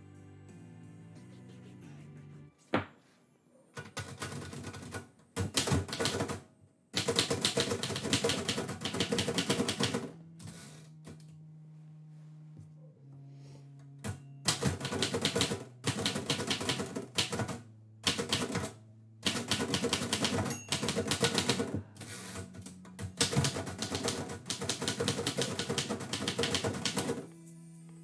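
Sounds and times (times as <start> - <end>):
typewriter keys striking: 3.8 - 6.4, 7.0 - 10.1, 14.5 - 27.2.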